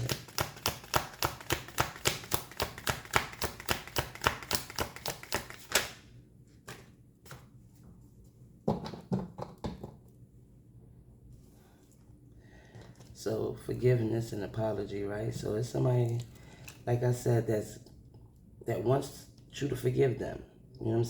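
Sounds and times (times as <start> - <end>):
cards being shuffled: 0.0 - 6.0.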